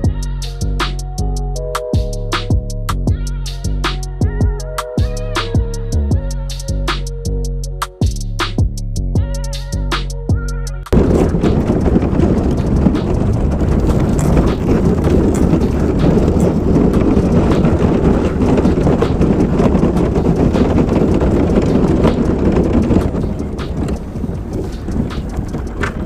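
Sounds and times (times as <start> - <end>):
boat hull crunching through ice: 11.0 - 26.0
ice chunks knocking hull: 11.0 - 26.0.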